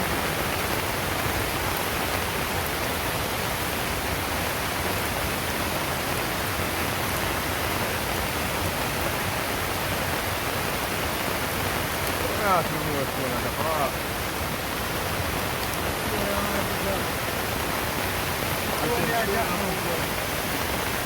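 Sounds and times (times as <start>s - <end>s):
torrential rain and runoff water: 0.0s - 21.0s.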